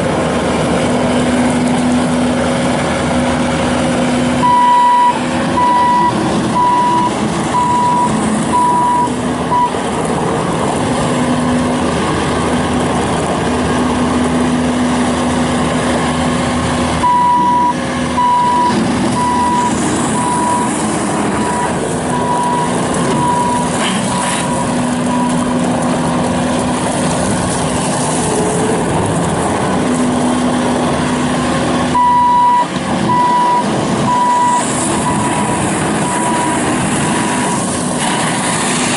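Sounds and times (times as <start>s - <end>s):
diesel engine running: 0.0s - 38.9s
backup alarm beeping: 4.4s - 9.8s, 17.0s - 20.8s, 21.4s - 25.5s, 32.0s - 37.6s.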